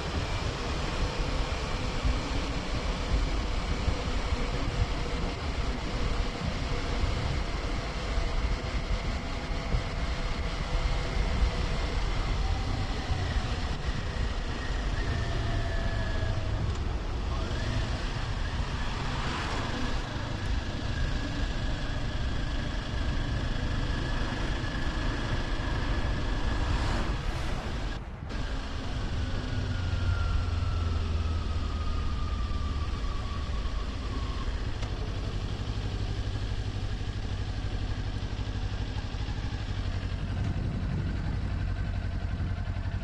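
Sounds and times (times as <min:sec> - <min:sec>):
wind noise on microphone: 0:00.0 - 0:28.5, 0:39.4 - 0:43.0
motorcycle engine cruising: 0:00.0 - 0:43.0.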